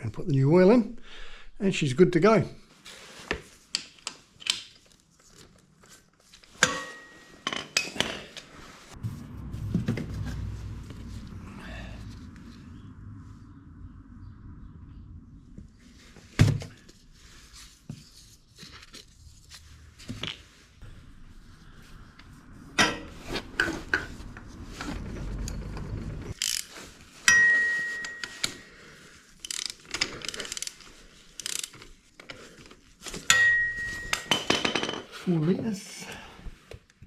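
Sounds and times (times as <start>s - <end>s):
ratchet clicking: 26.4s - 26.7s, 29.4s - 30.8s, 31.4s - 31.8s
metallic clink ringing: 27.3s - 28.6s, 33.3s - 34.7s
hand tools clicking and knocking: 33.2s - 35.1s.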